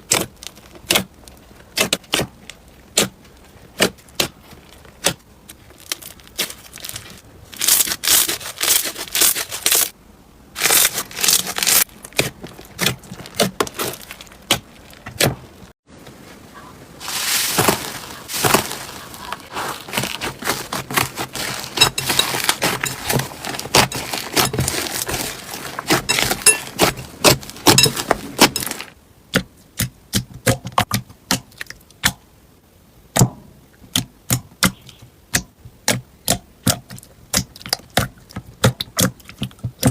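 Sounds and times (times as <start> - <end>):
slime crackling and popping: 0.0 - 9.9, 10.6 - 15.7, 17.1 - 29.0.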